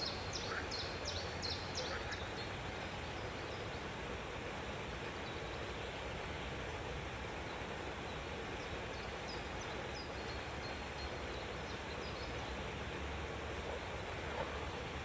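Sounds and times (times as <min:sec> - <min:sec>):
steady background hiss: 0:00.0 - 0:15.0.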